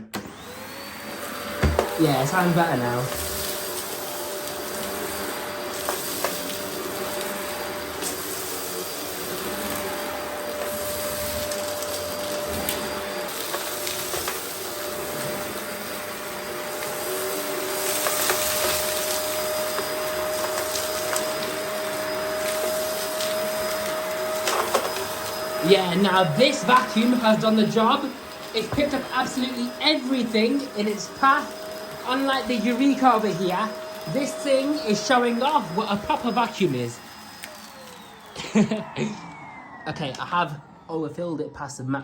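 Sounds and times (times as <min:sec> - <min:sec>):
vacuum cleaner motor whine: 0:00.0 - 0:42.0
debris rattling in vacuum: 0:00.3 - 0:39.1.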